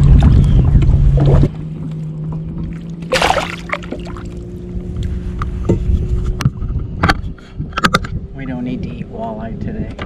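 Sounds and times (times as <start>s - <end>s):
fish splashing into water: 2.7s - 4.4s.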